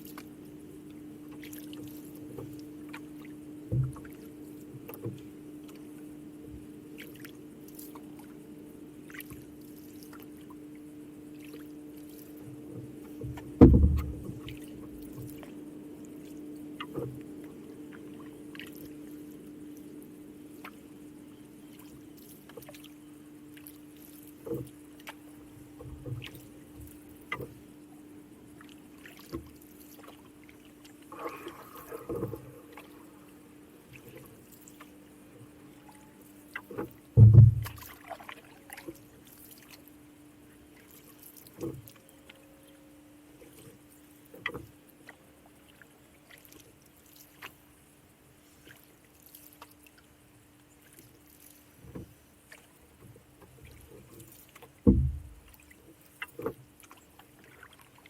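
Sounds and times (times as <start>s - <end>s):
paddling water and drips: 0.0s - 58.0s
hollow knock on canoe: 3.7s - 4.1s, 13.1s - 14.6s, 37.2s - 37.9s, 54.8s - 55.6s
low hum: 5.6s - 22.3s, 30.6s - 38.0s.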